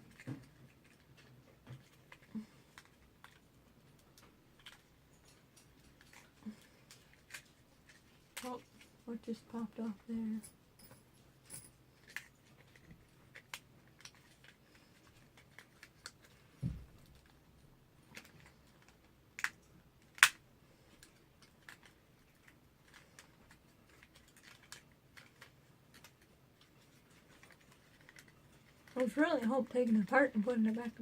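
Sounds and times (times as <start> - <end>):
dull thump: 16.6 - 17.0.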